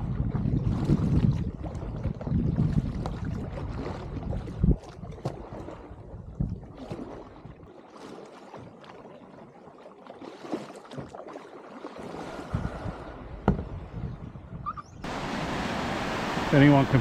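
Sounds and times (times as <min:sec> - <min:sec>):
paddle splashes and drips: 0:00.0 - 0:14.1, 0:15.0 - 0:17.0
rush of water: 0:06.7 - 0:13.8, 0:15.0 - 0:17.0.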